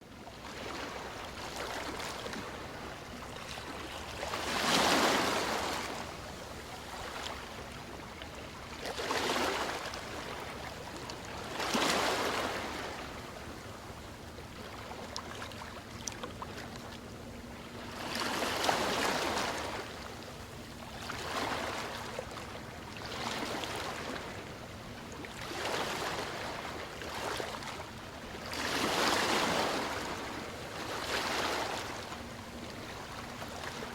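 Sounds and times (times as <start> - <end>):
waves breaking on a beach: 0.0 - 33.9.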